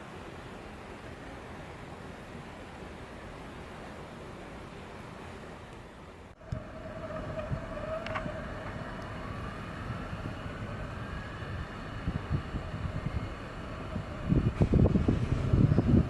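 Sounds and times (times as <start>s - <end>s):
faint rising whine: 6.4s - 16.0s
vehicle passing with low rumble: 6.4s - 16.0s.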